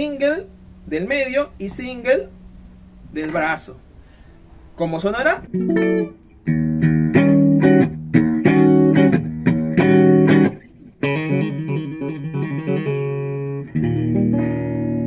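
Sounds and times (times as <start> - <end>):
electric guitar chords and notes: 5.4 - 15.0.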